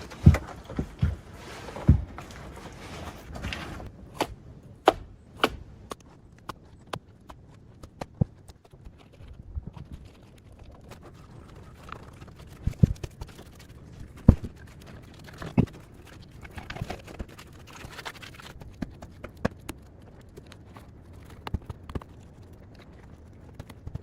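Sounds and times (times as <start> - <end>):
faint rustling: 0.0 - 3.9
knocks and thumps: 0.0 - 5.7.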